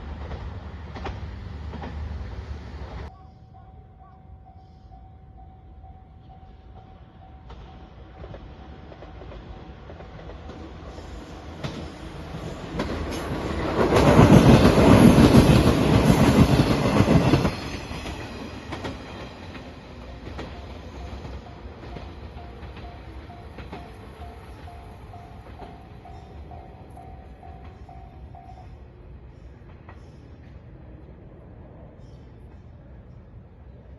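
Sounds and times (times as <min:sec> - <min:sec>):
train rumble and wheel noise: 0:00.0 - 0:33.9
level crossing warning bell: 0:19.6 - 0:28.8.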